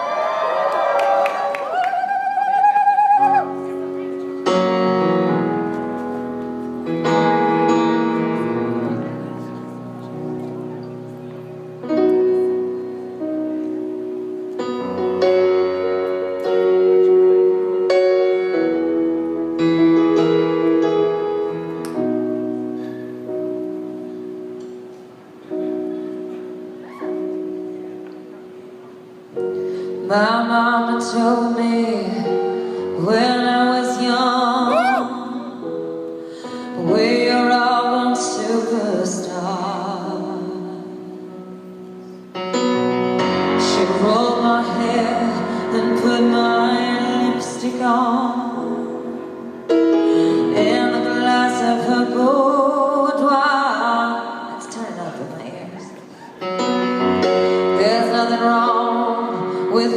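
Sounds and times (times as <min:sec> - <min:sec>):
piano chords: 0:00.0 - 0:59.9
woman singing: 0:30.0 - 0:35.7, 0:36.7 - 0:41.2, 0:43.4 - 0:56.0, 0:57.6 - 0:59.9.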